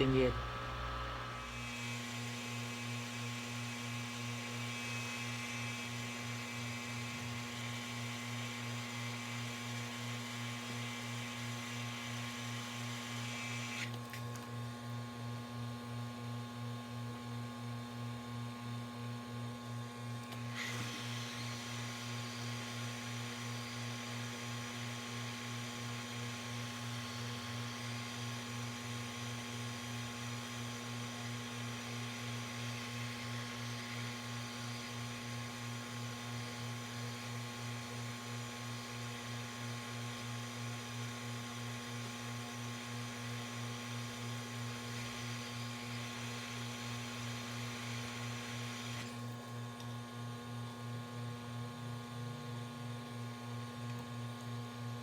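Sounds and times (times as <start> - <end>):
low electrical hum: 0.0 - 4.7
hot air blower hissing: 0.0 - 6.3, 20.5 - 39.2.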